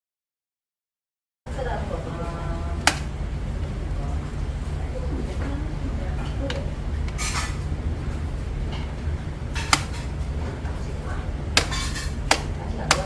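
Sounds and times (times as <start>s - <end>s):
electric fan humming: 1.5s - 13.0s
plastic parts clicking: 2.9s - 3.1s, 11.6s - 13.0s.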